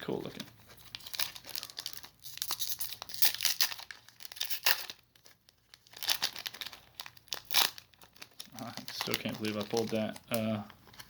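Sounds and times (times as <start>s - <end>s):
cards and foil wrapper crinkling: 0.0s - 11.0s.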